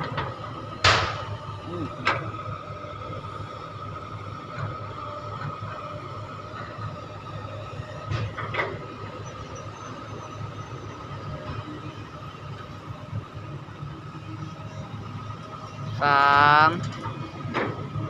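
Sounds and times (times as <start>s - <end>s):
excavator engine and hydraulics: 0.0s - 18.0s
excavator sharp clanks: 0.8s - 1.4s.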